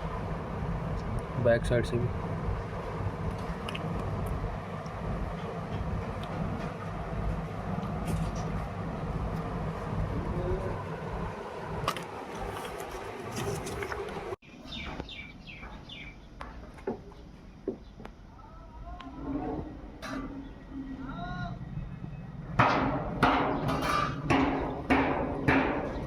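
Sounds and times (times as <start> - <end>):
factory machinery rumble: 0.0 - 14.4, 19.1 - 26.0
bird chirps: 14.4 - 16.4
sharp knocks: 22.6 - 26.0.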